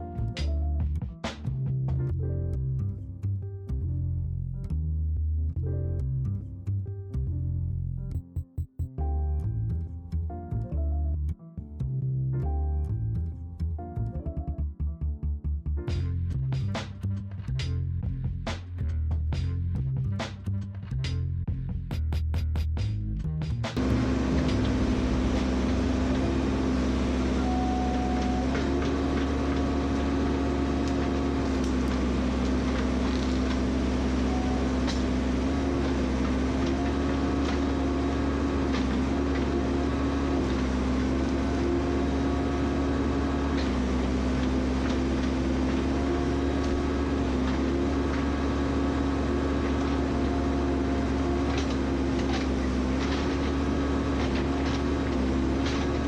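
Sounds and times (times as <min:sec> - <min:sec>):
engine running steadily: 0:23.7 - 0:56.0.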